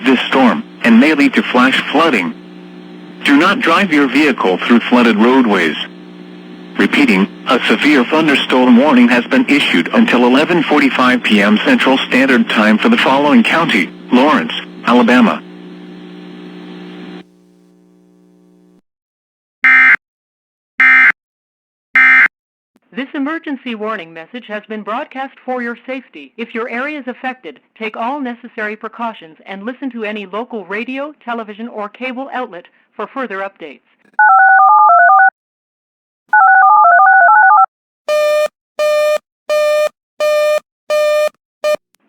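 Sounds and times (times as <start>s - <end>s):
faint hum: 0.0s - 18.8s.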